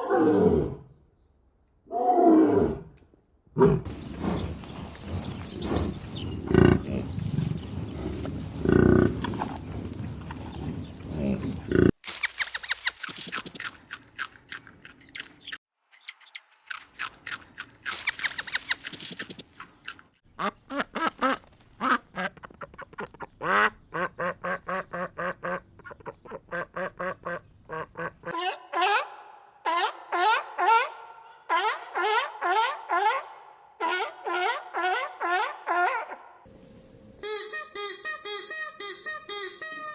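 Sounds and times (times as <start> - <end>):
rough noisy animal call: 3.6 - 13.4
short high chirps: 15.0 - 16.4.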